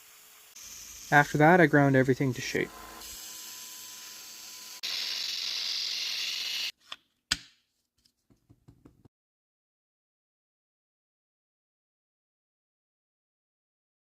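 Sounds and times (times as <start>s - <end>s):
power grinder hissing: 0.0s - 6.7s.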